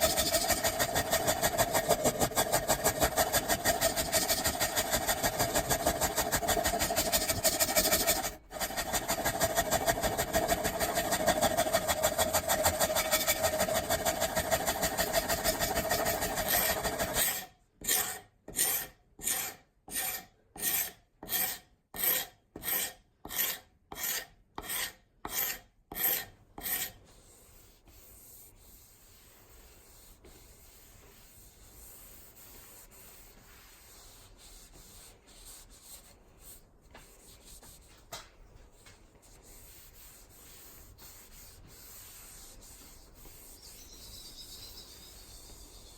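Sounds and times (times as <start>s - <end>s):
scraping strokes on axe: 0.0s - 28.4s.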